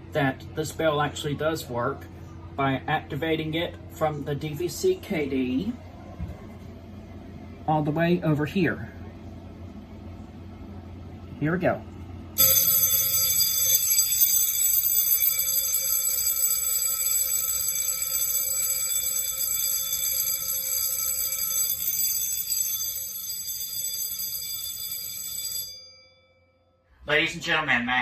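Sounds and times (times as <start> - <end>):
fire alarm bell ringing: 12.4 - 26.8.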